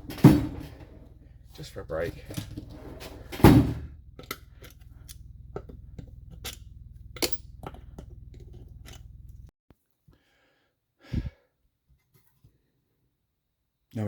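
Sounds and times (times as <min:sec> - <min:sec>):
engine parts and tools clicking: 0:00.0 - 0:09.5
steady low hum: 0:00.0 - 0:09.5.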